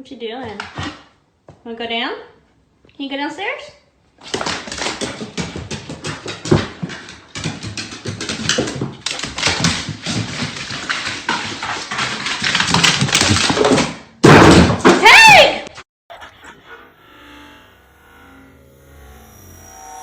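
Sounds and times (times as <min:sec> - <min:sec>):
scuffling and knocking: 0:04.2 - 0:15.0.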